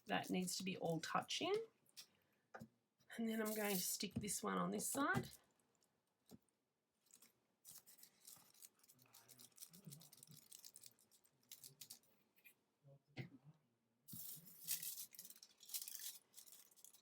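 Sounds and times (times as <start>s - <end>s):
foil crinkling and rustling: 7.0s - 12.1s, 14.1s - 17.0s.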